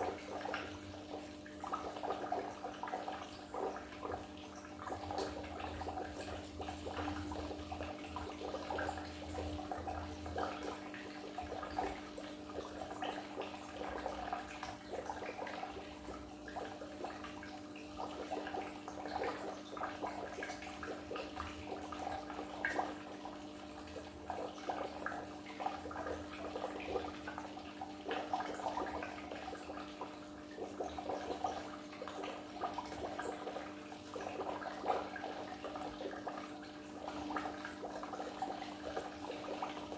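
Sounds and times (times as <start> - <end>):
steady low hum: 0.0 - 18.6
aquarium water bubbling: 0.0 - 39.9.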